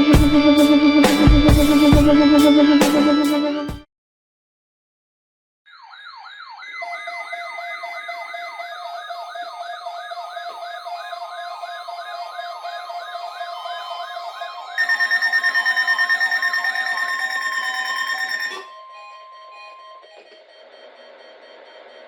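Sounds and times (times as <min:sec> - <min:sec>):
electronic warbling alert siren: 0:05.7 - 0:22.0.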